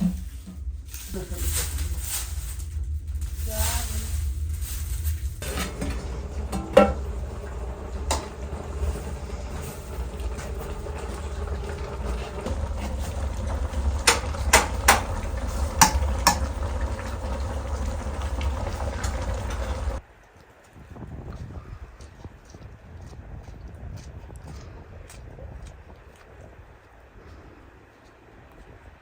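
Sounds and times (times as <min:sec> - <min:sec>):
pot bubbling over fire: 0:00.0 - 0:20.3.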